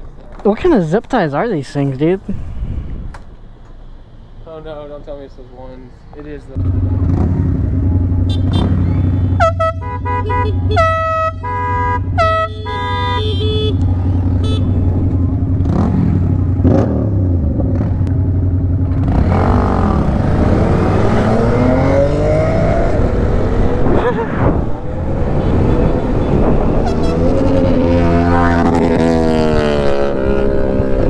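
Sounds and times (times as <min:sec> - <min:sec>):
motorcycle engines revving: 0:02.0 - 0:31.0
air horn blasts: 0:08.2 - 0:15.3, 0:25.3 - 0:28.8
motorcycle engine idling: 0:12.0 - 0:16.6.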